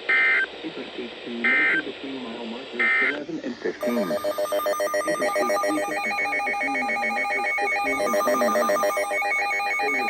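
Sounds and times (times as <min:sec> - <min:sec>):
trilling emergency alert tone: 0:03.8 - 0:10.0.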